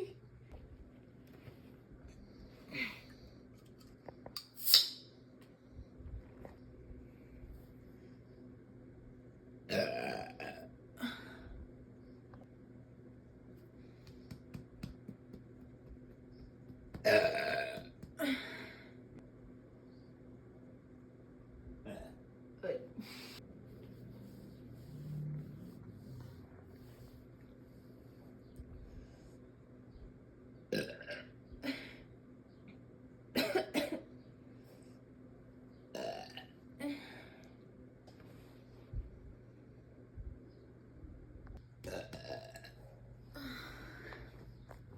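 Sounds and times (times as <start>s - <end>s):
girl burping: 9.7s - 11.2s, 17.1s - 18.5s
woman burping: 9.7s - 11.3s, 17.0s - 18.6s, 21.8s - 23.0s, 30.7s - 31.8s, 41.9s - 42.8s.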